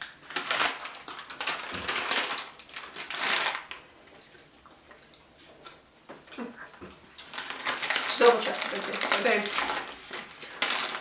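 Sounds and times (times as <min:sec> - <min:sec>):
rustling and crackling: 0:00.2 - 0:11.0.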